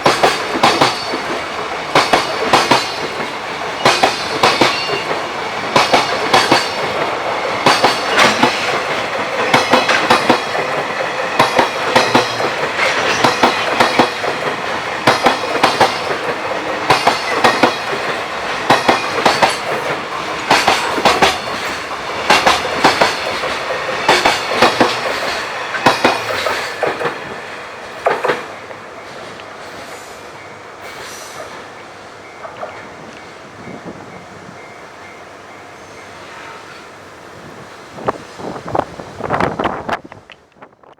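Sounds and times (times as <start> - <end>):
train wheels clacking over rail joints: 0.0 - 30.1
freight train rumble: 0.0 - 40.9.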